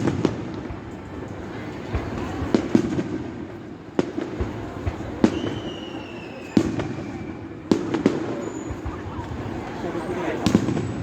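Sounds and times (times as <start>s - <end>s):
fireworks bursting bangs: 0.0s - 11.0s
falling firework whistle: 5.2s - 9.3s.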